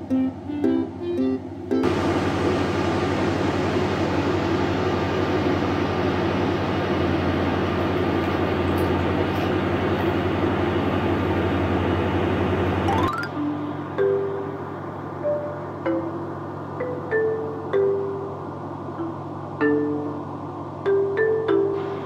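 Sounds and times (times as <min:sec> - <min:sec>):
hair dryer running: 0:01.8 - 0:12.9.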